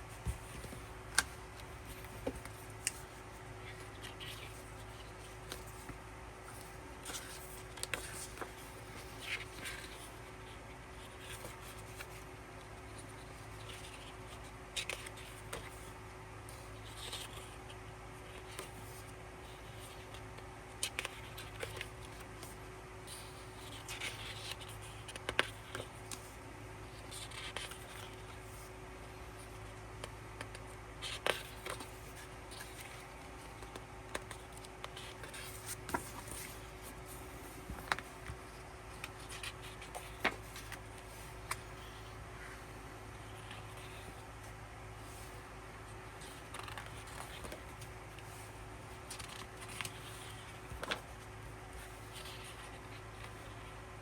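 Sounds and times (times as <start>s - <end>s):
paper and plastic rustling: 0.0s - 12.2s, 29.5s - 45.5s, 46.1s - 53.6s
pages turning: 0.1s - 10.1s, 30.4s - 45.4s, 46.2s - 51.2s.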